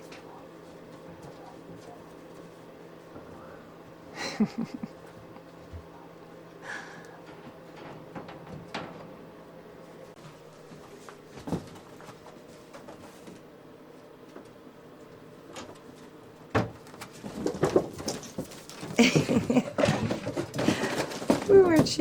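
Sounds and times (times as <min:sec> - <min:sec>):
knocks and rattles: 0:07.2 - 0:09.4, 0:16.5 - 0:22.0.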